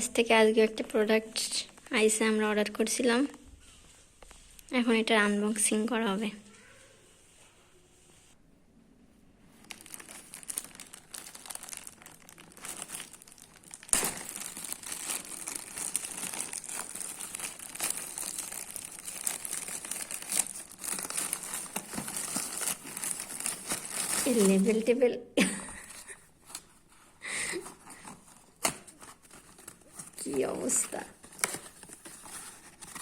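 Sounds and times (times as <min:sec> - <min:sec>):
packaging crinkling and tearing: 0:09.6 - 0:24.9, 0:27.7 - 0:33.0
packaging snap: 0:13.7 - 0:14.6.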